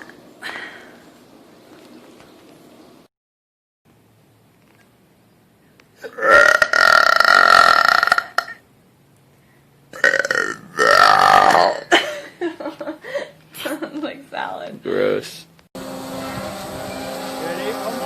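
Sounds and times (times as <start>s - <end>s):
woman burping loudly: 6.0s - 8.6s, 9.9s - 12.2s.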